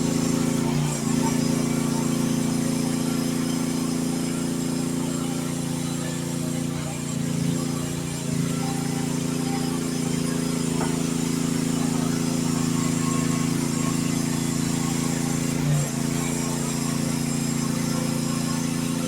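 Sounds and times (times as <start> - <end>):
excavator engine running: 0.0 - 19.0.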